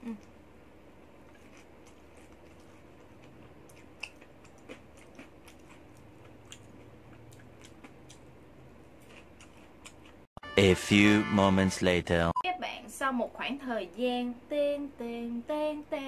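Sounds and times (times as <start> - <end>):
chewing crunchy fried food: 1.2 - 10.3.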